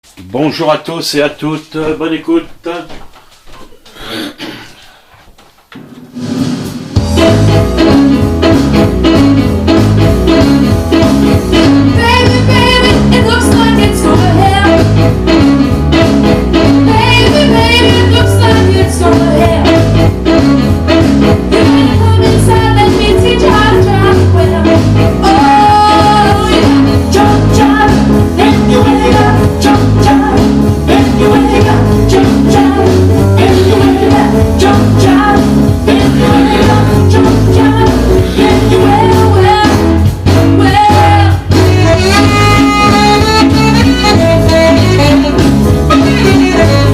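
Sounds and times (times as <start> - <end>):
person singing over a band: 25.2 - 39.9.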